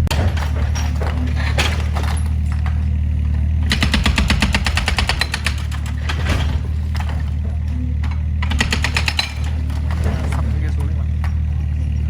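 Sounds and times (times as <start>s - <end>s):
excavator engine running: 0.0s - 12.0s
rapid even hammering: 3.5s - 7.4s, 8.3s - 11.9s.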